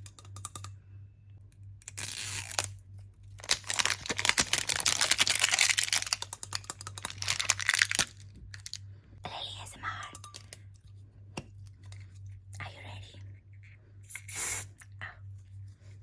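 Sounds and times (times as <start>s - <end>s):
packaging crinkling and tearing: 1.8s - 8.8s.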